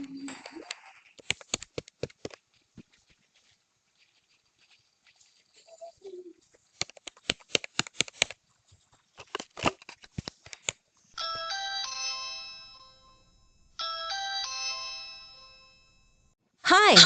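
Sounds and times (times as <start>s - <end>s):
doorbell chime tune: 11.2s - 16.3s.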